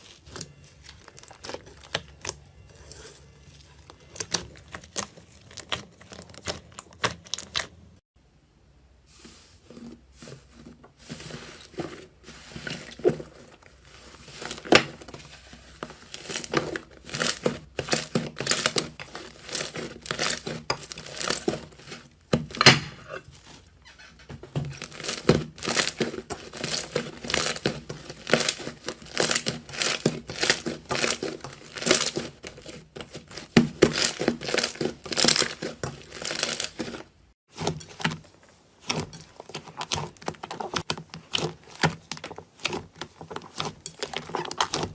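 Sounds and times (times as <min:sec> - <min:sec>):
slime crackling and popping: 0:24.6 - 0:37.1.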